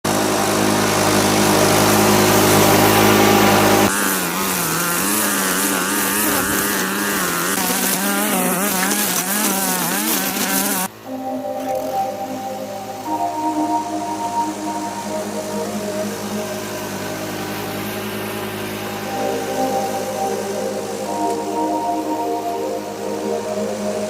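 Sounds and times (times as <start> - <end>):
lawn tractor engine running: 0.0 - 10.9, 15.1 - 21.4.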